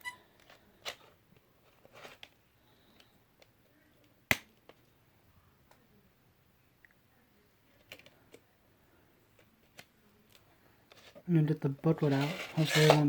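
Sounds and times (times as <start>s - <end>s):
rustling: 0.0s - 3.1s, 10.4s - 13.0s
sharp plastic snap: 4.3s - 4.6s.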